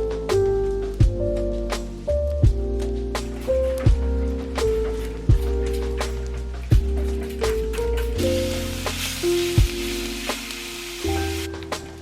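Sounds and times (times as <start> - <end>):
background music with low bass: 0.0 - 12.0
steady hiss: 7.4 - 12.0.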